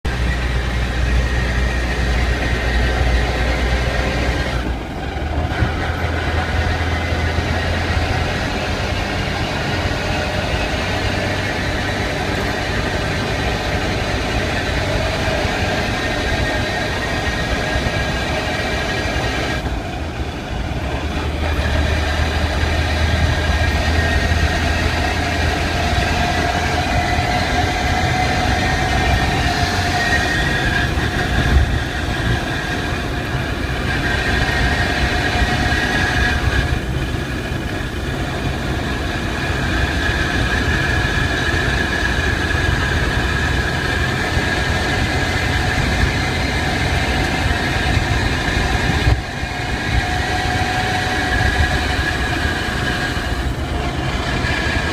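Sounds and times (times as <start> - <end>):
car drivetrain whining: 0.0 - 54.9.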